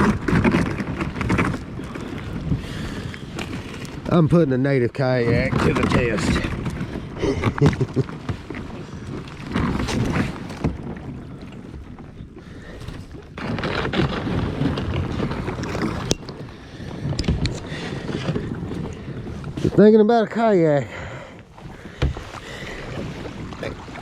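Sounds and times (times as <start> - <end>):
kayak hull crunching through ice: 0.0 - 24.0.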